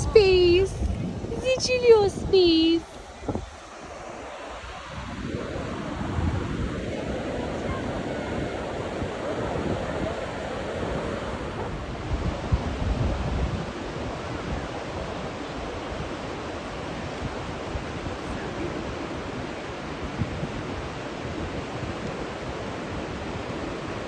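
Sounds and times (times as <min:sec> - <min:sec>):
ocean surf breaking: 0:00.0 - 0:24.0
wind buffeting microphone: 0:00.0 - 0:24.0.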